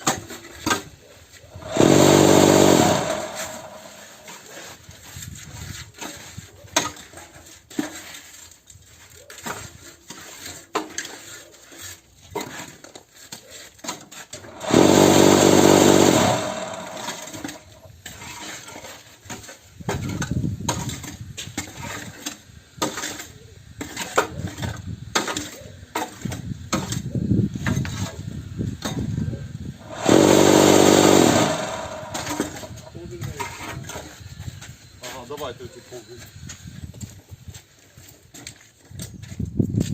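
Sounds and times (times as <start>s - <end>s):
vibration motor running: 1.6s - 4.2s, 14.5s - 17.6s, 29.8s - 32.8s.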